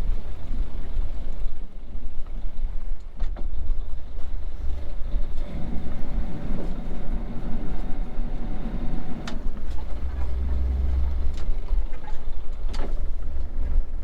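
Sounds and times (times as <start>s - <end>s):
sailing yacht rumble: 0.0s - 14.0s
faint clicks: 4.6s - 13.5s.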